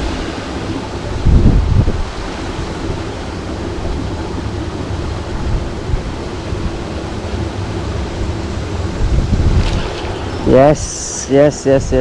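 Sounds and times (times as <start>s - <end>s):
steady rushing noise with rumble: 0.0s - 12.0s.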